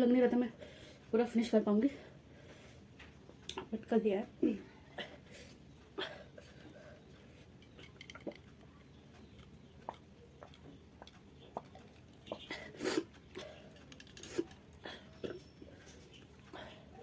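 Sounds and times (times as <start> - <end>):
lip clicks and smacks: 7.6 - 16.3.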